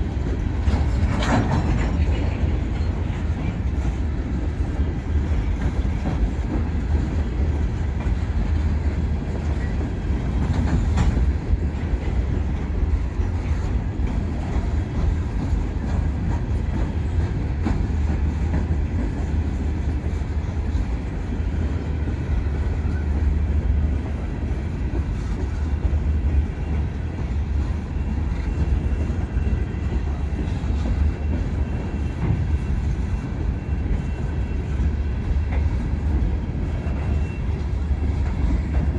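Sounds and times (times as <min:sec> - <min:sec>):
train wheels rumbling on rails: 0:00.0 - 0:38.9
wheels clicking over rail joints: 0:00.0 - 0:38.9.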